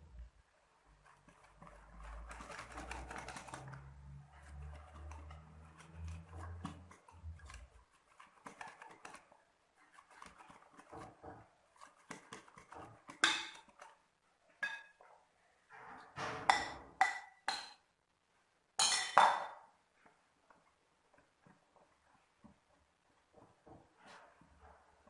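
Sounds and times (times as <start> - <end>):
spoon scraping mixing bowl: 0.9 - 14.0.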